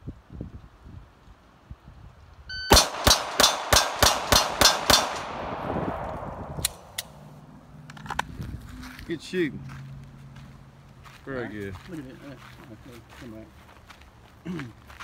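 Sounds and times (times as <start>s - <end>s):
shot timer beep: 2.5s - 2.8s
rapid pistol shots with echo: 2.7s - 7.0s.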